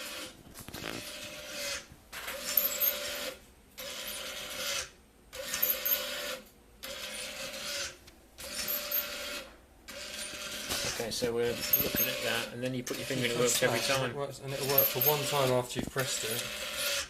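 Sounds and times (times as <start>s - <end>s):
small motor running: 16.0s - 17.0s.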